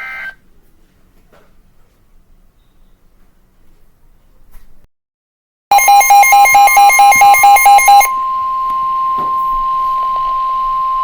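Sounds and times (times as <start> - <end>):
steady warning alert tone: 5.7 - 8.4
fast beeping alarm: 5.7 - 11.0.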